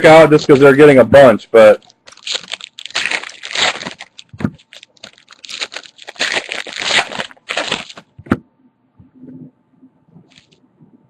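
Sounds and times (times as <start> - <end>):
card pack wrappers crinkling: 1.6 - 8.1, 10.3 - 10.6.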